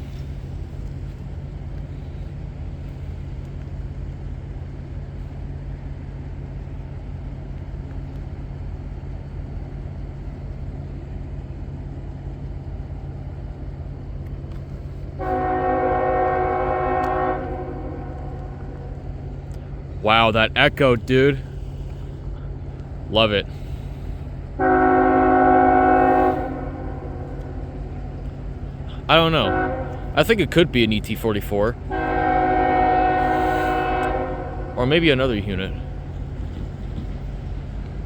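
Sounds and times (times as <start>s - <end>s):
steady low rumble: 0.0s - 38.0s
locomotive air horn chord: 15.2s - 19.6s, 23.2s - 36.7s.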